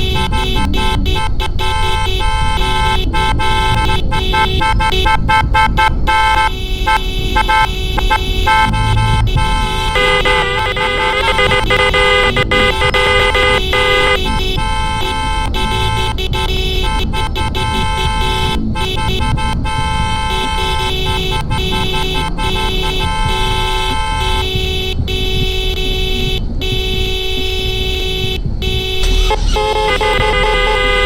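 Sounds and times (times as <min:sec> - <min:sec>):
car horns sounding together: 0:00.0 - 0:31.0.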